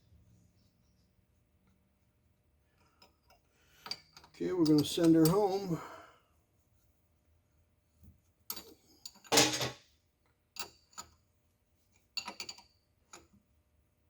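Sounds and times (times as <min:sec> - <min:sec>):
metal tools clicking on metal: 0:03.8 - 0:05.6.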